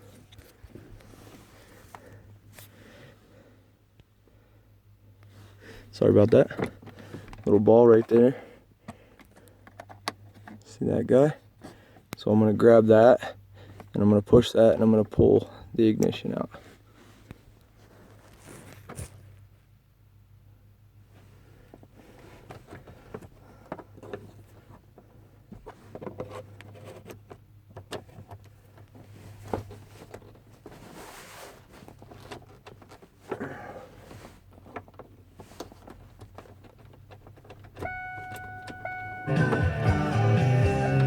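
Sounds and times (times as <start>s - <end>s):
low steady hum: 0.0s - 41.0s
steady warning tone: 37.8s - 41.0s.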